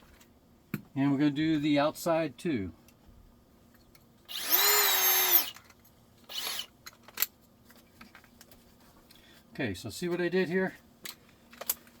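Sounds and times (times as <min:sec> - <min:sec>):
cordless drill motor whining: 0:04.3 - 0:05.6, 0:06.3 - 0:06.7.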